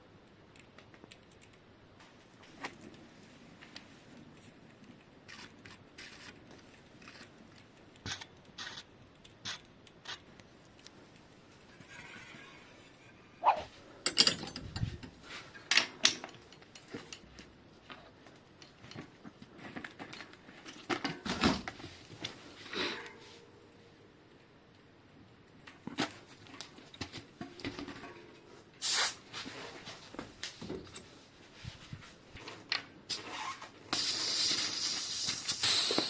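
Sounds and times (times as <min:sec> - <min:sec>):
clattering: 0:14.1 - 0:16.3.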